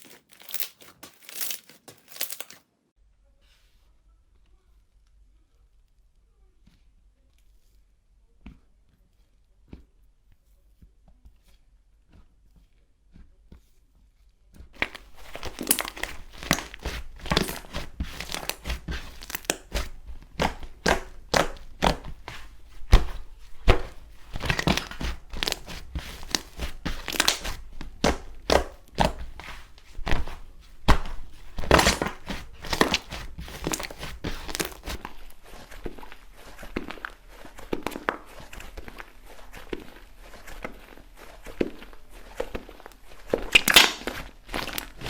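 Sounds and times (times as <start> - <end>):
slime squelching and popping: 14.8 - 45.0.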